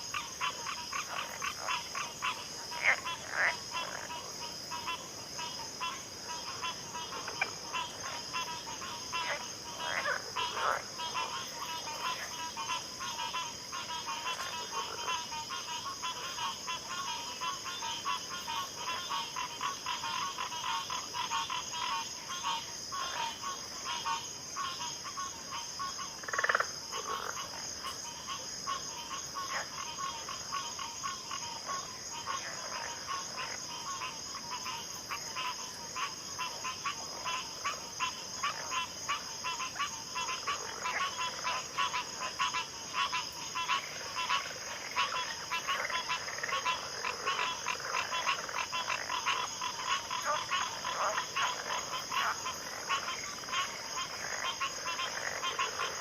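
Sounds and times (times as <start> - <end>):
frogs calling: 0.0 - 56.0
loud low frog call: 0.0 - 56.0.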